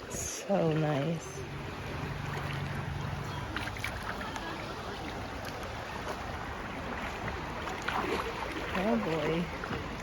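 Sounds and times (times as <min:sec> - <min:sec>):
creek water rushing: 0:00.0 - 0:10.0
faint distant voices: 0:02.3 - 0:09.7.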